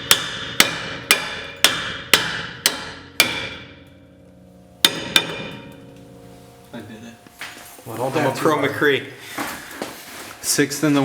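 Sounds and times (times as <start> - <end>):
hammer striking metal rotor: 0.0 - 6.0.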